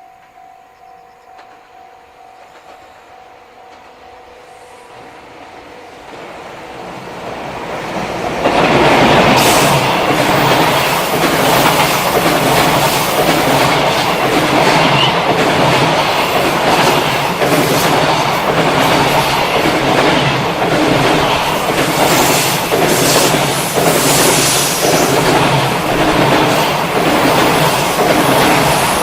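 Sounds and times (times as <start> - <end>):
train wheels clattering over rail joints: 7.4 - 29.0.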